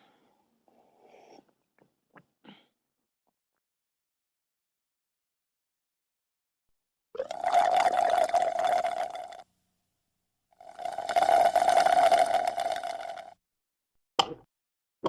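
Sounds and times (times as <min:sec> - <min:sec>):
person drinking: 0:07.2 - 0:09.4, 0:10.6 - 0:13.4.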